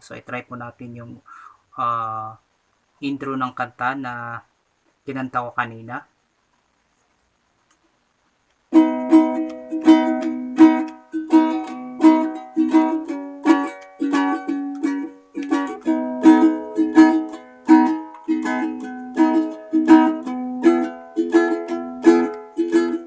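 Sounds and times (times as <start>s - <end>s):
strummed string instrument chords: 8.8s - 23.0s.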